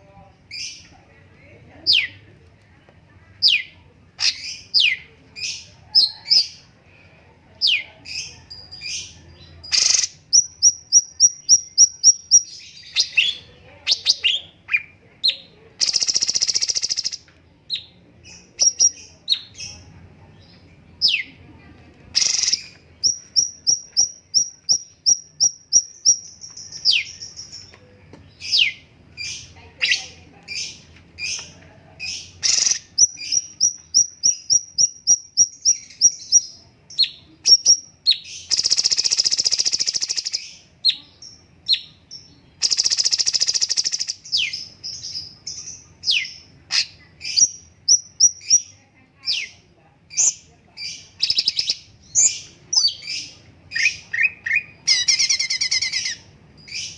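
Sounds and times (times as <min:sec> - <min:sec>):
bird singing varied song: 0:00.4 - 0:01.0, 0:02.8 - 0:06.7, 0:07.6 - 0:21.4, 0:22.1 - 0:56.9.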